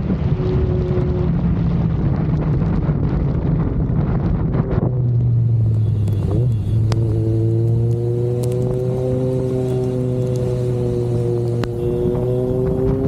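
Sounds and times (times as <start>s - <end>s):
motorcycle engine running: 4.6s - 13.0s.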